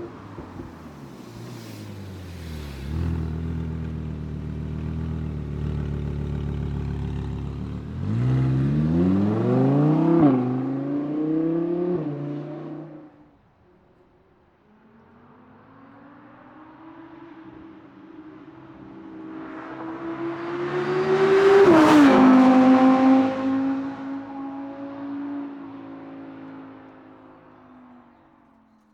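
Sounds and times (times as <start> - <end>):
car engine accelerating hard: 0.0 - 13.1, 19.4 - 26.8.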